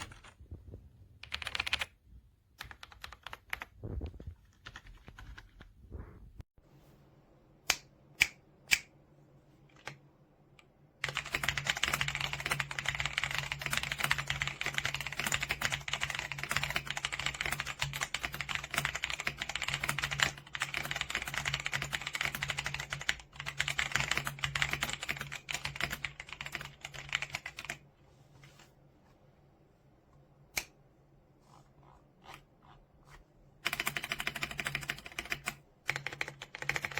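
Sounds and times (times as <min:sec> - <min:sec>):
mechanical keyboard typing: 0:00.0 - 0:00.4, 0:01.2 - 0:02.0, 0:02.6 - 0:05.7, 0:11.0 - 0:27.8, 0:33.6 - 0:36.9.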